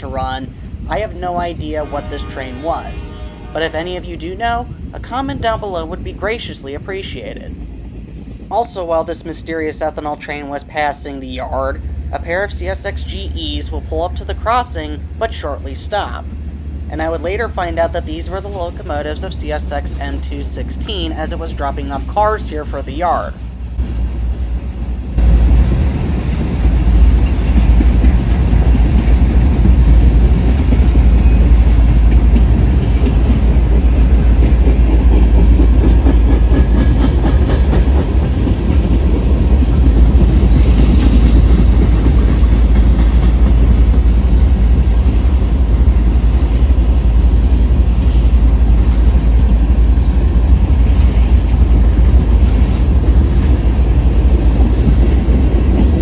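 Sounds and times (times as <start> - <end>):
train wheels rumbling on rails: 0.0 - 56.0
wheels clicking over rail joints: 11.9 - 56.0.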